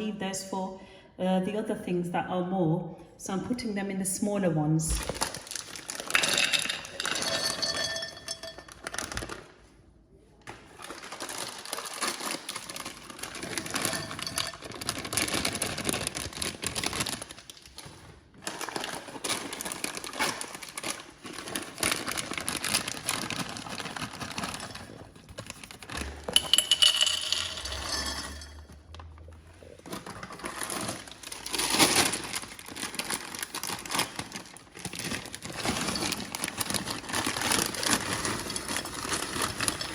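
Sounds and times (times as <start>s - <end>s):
nuts rattling into glass jars: 5.5s - 9.2s, 13.2s - 16.0s, 25.9s - 28.7s
glass jars and lids clinking: 6.1s - 9.0s, 13.6s - 14.7s, 26.3s - 28.8s.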